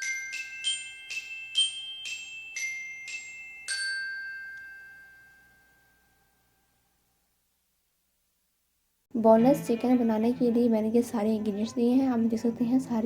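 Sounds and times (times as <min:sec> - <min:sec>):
glockenspiel-like jingle: 0:00.0 - 0:06.4.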